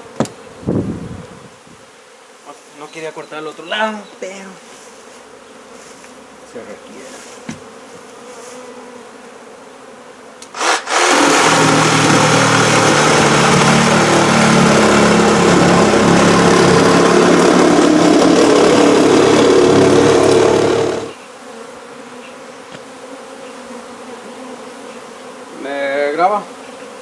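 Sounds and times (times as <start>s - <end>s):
honey bees buzzing: 2.8s - 27.0s
power saw cutting into wall: 10.4s - 21.2s.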